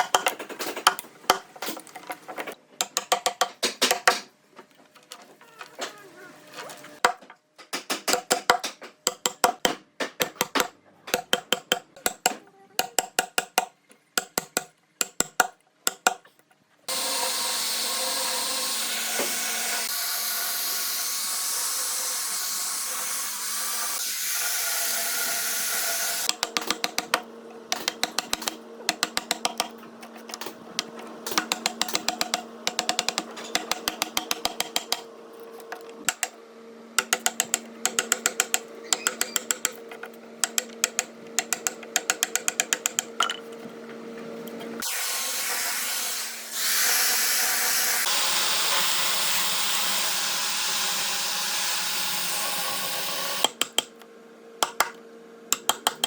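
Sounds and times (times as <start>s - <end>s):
power tool running: 16.9s - 30.6s, 44.8s - 53.6s.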